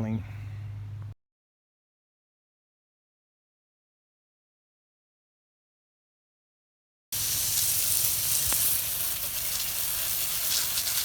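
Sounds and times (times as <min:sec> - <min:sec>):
garden hose spraying water: 0:07.1 - 0:11.0.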